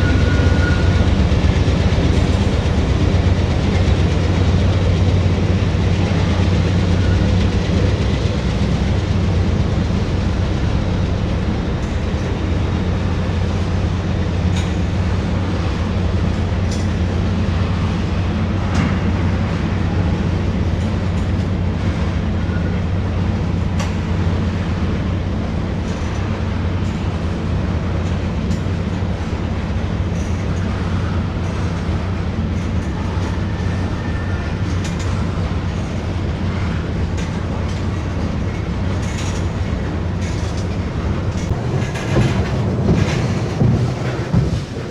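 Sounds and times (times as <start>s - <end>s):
train rumbling over bridge: 0.0s - 44.9s
wheels clicking over rail joints: 11.3s - 44.9s.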